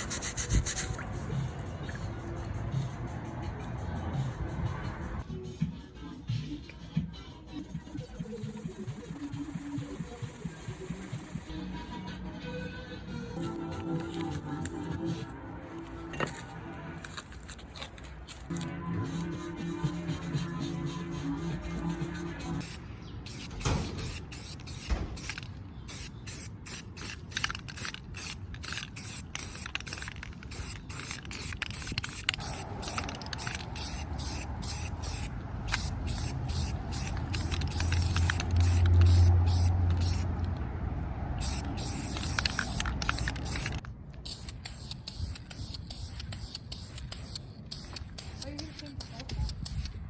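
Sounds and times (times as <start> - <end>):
pressurized spray hissing: 29.0 - 40.3, 41.4 - 43.7.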